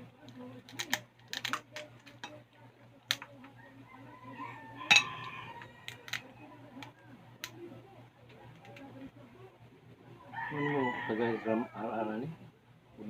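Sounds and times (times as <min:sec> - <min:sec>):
cutlery clinking on dishes: 0:04.9 - 0:05.2.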